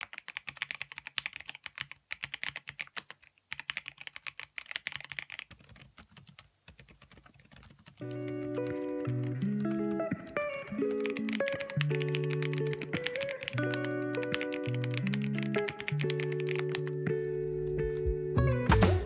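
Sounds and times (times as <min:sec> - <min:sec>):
fast typing on mechanical keyboard: 0:00.0 - 0:16.9
guitar music: 0:08.0 - 0:19.0.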